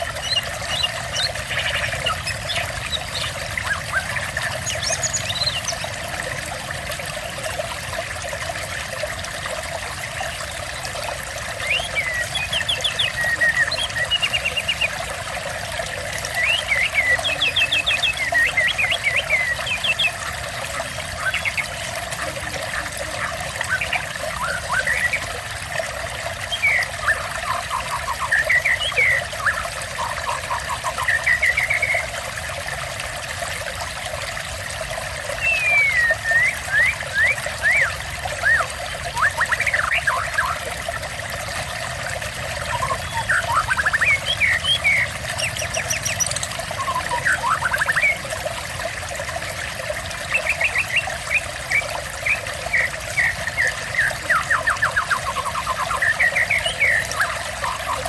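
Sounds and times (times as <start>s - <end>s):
songbird chirping and trilling: 0.0s - 5.8s, 11.6s - 14.9s, 16.4s - 20.2s, 26.5s - 32.1s, 35.4s - 40.6s, 42.6s - 48.2s, 50.4s - 58.0s
trickling water: 0.0s - 58.0s.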